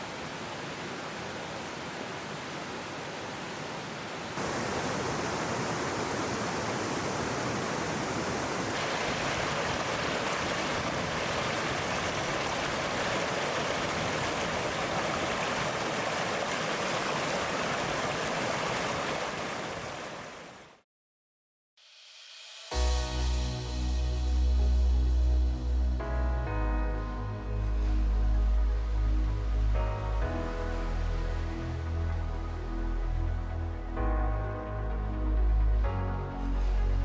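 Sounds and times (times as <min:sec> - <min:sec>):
stream rushing: 0:00.0 - 0:20.8.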